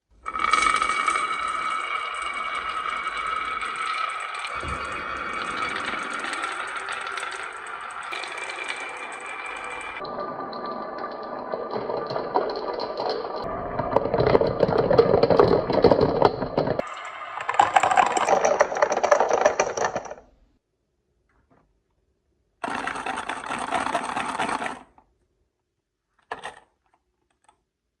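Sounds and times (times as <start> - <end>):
marbles rattling down wooden run: 0.3 - 20.2, 22.6 - 24.9.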